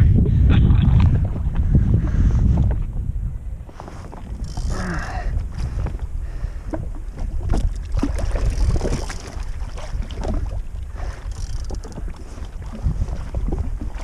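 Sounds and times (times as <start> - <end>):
steady low rumble: 0.0 - 14.0
wind buffeting microphone: 0.0 - 14.0
water splashing against jet ski: 3.7 - 14.0.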